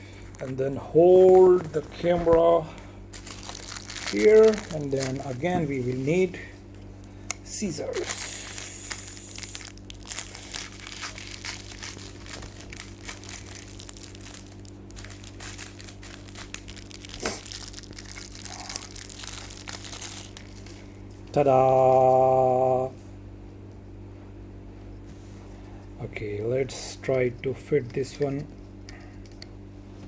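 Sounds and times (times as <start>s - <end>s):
plastic packaging crinkling: 0.0s - 6.4s, 7.8s - 20.9s
steady low hum: 0.0s - 30.0s.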